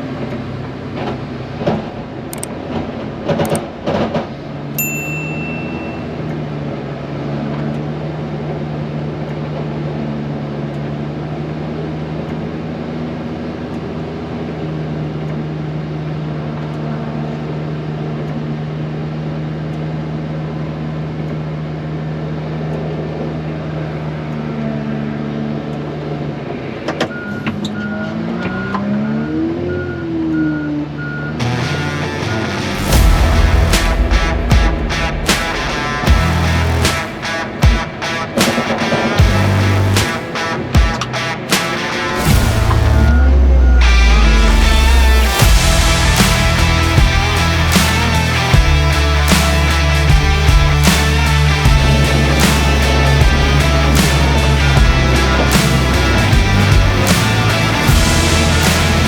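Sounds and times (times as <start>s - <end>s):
reversing alarm beeping: 27.1s - 31.5s, 42.3s - 48.0s
heavy vehicle engine revving: 27.1s - 37.4s, 39.2s - 40.1s, 42.0s - 59.0s.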